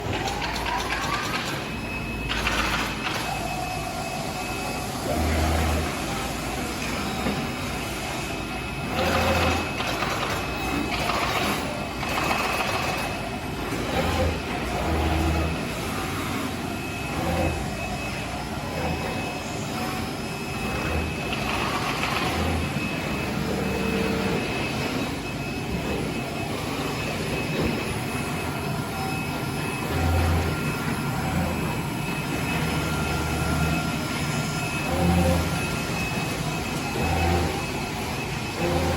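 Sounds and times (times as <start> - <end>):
router spindle whine: 0.0 - 38.9
router cutting noise: 38.5 - 38.9.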